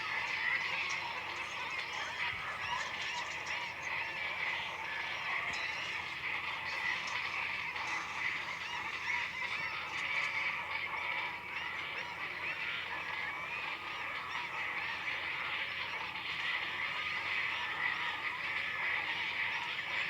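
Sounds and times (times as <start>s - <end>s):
chorus of animal calls: 0.0s - 20.0s.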